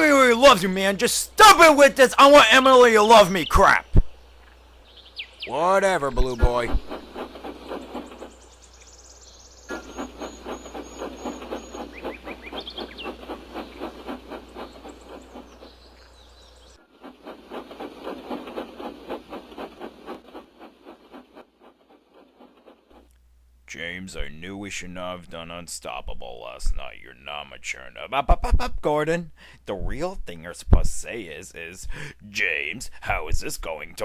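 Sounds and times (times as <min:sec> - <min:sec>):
steam locomotive chuffing: 0:00.0 - 0:23.1.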